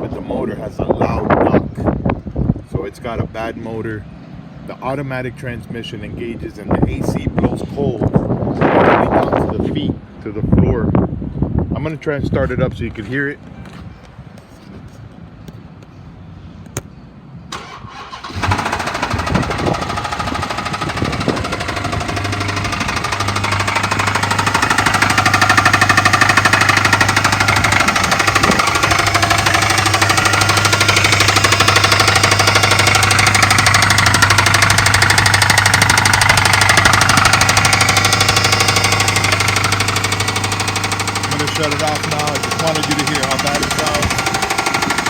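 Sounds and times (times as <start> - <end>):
engine knocking loudly: 17.6 - 45.0.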